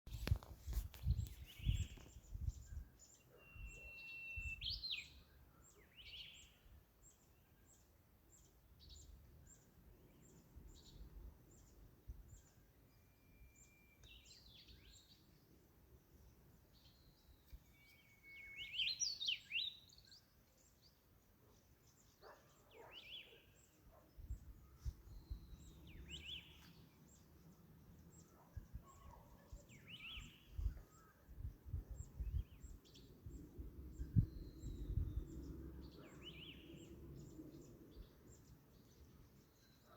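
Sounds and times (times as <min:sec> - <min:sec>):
bird whistles: 0:03.4 - 0:05.1, 0:17.8 - 0:19.8.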